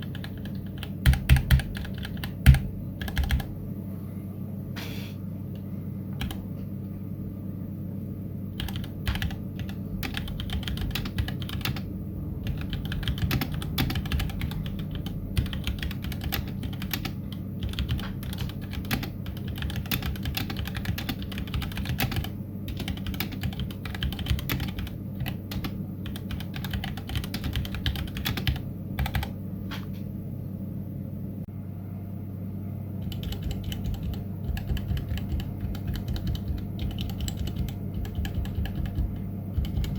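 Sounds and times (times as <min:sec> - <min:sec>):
mechanical keyboard typing: 0:00.0 - 0:03.5, 0:06.2 - 0:06.4, 0:08.6 - 0:29.4, 0:33.0 - 0:39.9
low steady hum: 0:00.0 - 0:39.9.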